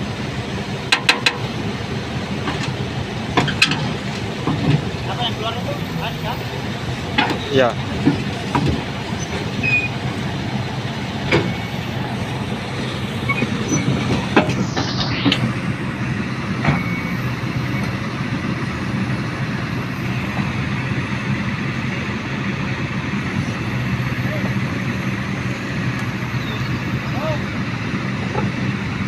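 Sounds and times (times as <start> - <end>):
diesel engine running: 0.0 - 29.0
crawler tracks clanking and squeaking: 2.4 - 15.4.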